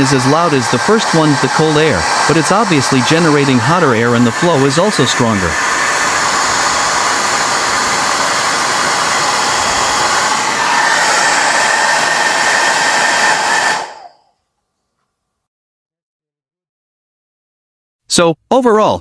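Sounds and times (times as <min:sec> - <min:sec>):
hair dryer blowing: 0:00.0 - 0:14.3
steady whine: 0:00.0 - 0:14.3.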